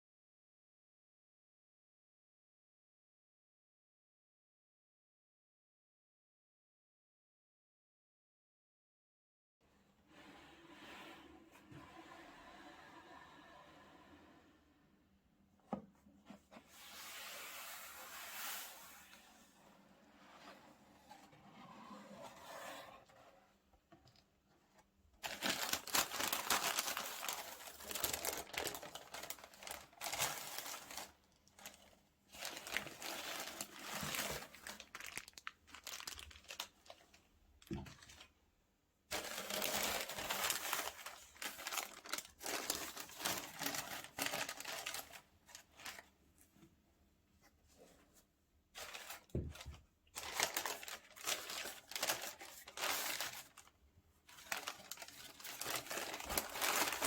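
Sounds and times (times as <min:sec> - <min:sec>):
paper wrapping crinkling: 0:25.2 - 0:37.2, 0:39.1 - 0:46.1, 0:48.8 - 0:53.7, 0:54.3 - 0:57.0.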